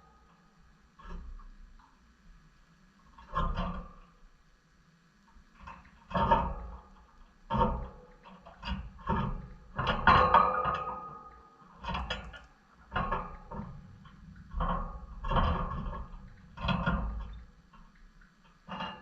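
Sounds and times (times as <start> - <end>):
birds rustling and knocking in cage: 5.6 - 19.0.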